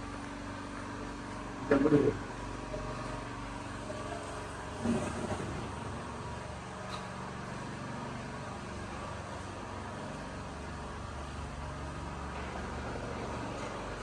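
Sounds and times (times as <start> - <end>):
constant background noise: 0.0 - 14.0.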